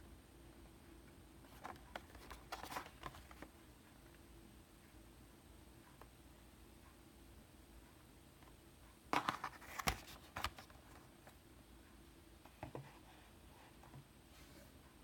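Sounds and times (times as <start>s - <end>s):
handling clicks and rustles: 1.5s - 3.6s.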